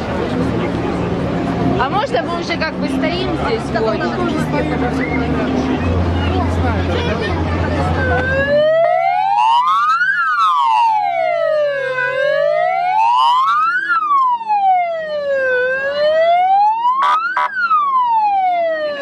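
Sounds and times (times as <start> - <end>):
motorcycle siren wailing: 7.8 - 19.0.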